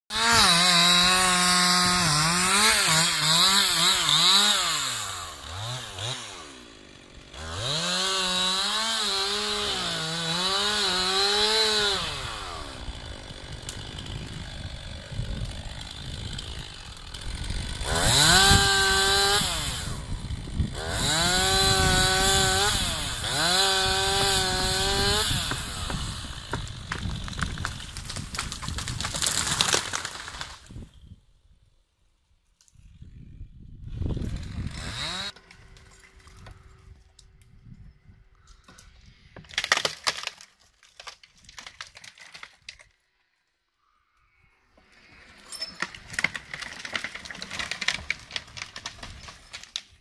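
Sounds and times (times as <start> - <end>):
chainsaw cutting wood: 0.1 - 31.0, 34.0 - 36.8, 39.3 - 42.9, 44.7 - 50.0.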